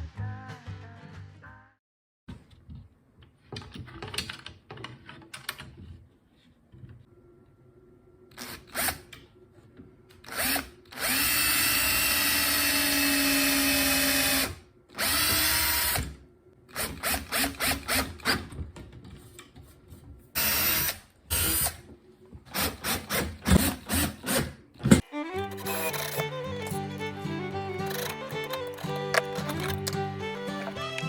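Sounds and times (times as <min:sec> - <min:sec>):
electric drill-driver running: 0:10.3 - 0:16.0, 0:22.5 - 0:31.0.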